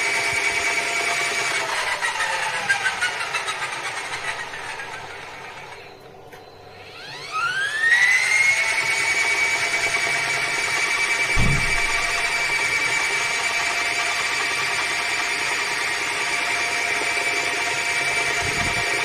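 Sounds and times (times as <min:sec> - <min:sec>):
washing machine spin motor whine: 0:00.0 - 0:19.0
low thump: 0:11.4 - 0:12.4.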